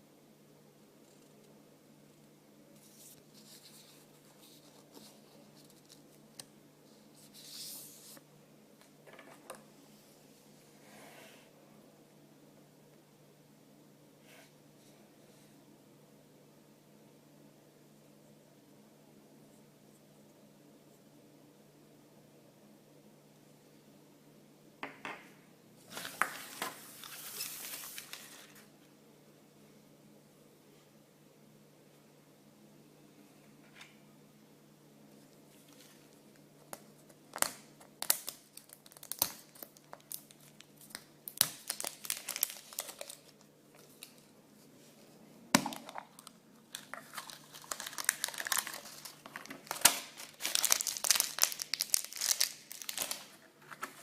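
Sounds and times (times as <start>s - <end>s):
packaging rustling: 25.9s - 28.7s, 37.0s - 44.3s, 45.6s - 54.0s
packaging clicks: 45.7s - 54.0s.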